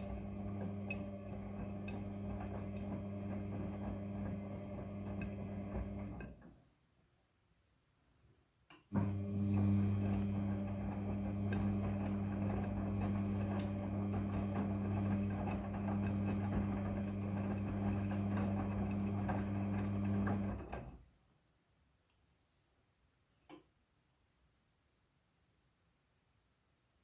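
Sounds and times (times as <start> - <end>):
washing machine humming: 0.0 - 6.4, 9.0 - 21.0.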